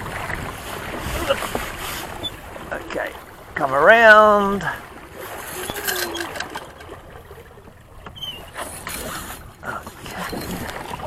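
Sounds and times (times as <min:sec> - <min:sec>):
wind buffeting microphone: 0:00.0 - 0:03.7
water washing along hull: 0:00.0 - 0:11.0.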